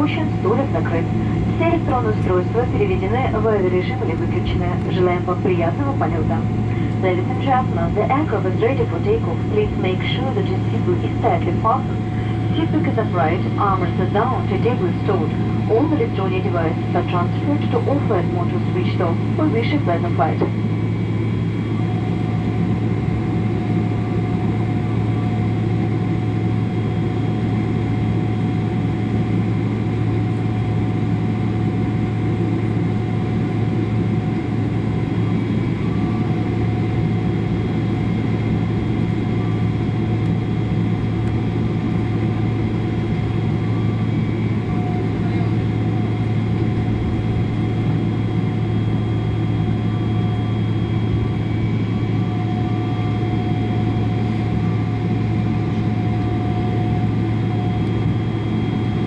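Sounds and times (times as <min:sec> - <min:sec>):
aircraft cabin hum: 0:00.0 - 0:59.0
jet engine whine: 0:00.0 - 0:59.0.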